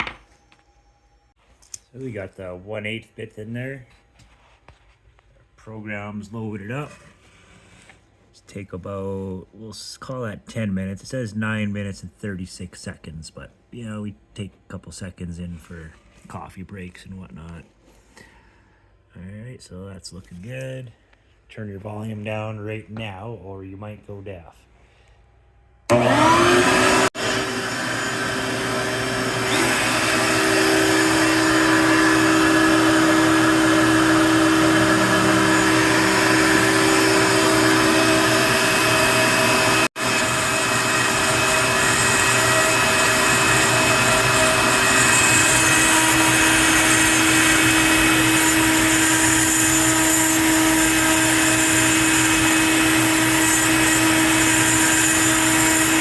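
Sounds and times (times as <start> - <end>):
router spindle whining: 25.9 - 56.0.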